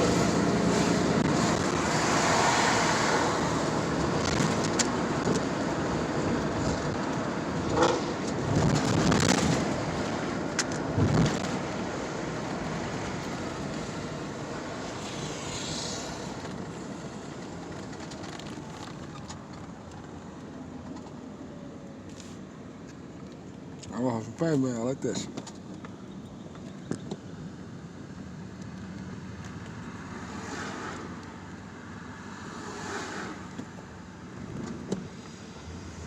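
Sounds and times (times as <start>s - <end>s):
sports car engines revving: 0.0s - 5.3s.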